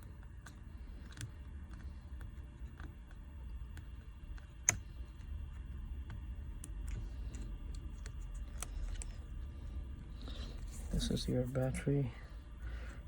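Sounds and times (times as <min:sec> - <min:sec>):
low steady hum: 0:00.0 - 0:13.0.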